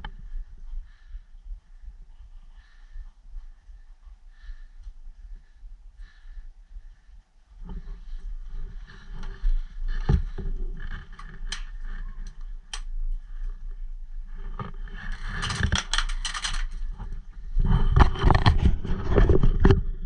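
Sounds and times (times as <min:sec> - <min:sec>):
wind rumble on microphone: 0:00.0 - 0:20.0
rustling and scraping movement: 0:07.5 - 0:20.0.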